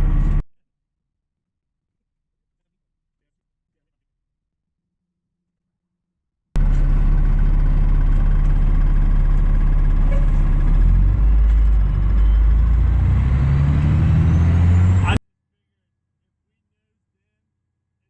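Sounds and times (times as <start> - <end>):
fire truck diesel engine: 0.0 - 0.4, 6.6 - 15.2.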